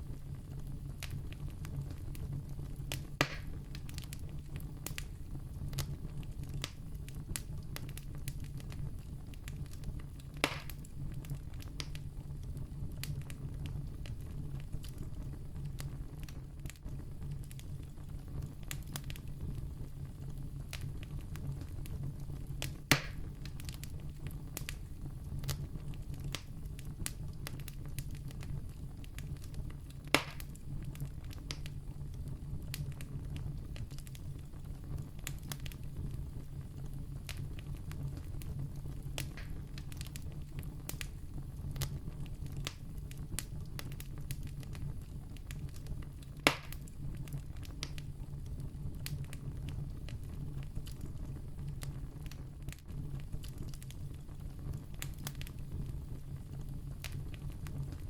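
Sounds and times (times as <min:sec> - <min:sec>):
campfire crackling: 0:00.0 - 0:58.0
loud sharp fire pops: 0:01.0 - 0:08.3, 0:09.4 - 0:12.0, 0:22.6 - 0:23.9, 0:29.2 - 0:31.8, 0:39.2 - 0:41.1, 0:45.5 - 0:48.1.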